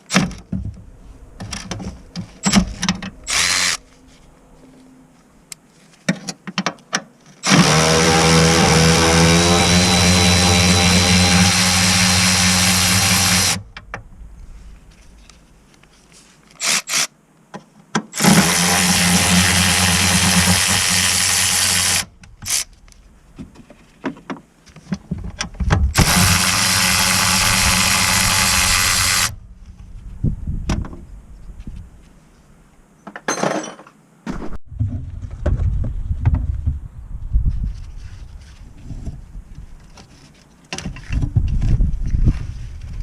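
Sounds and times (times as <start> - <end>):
power tool running: 3.2 - 3.8, 7.4 - 13.6, 18.2 - 22.7, 26.0 - 29.4.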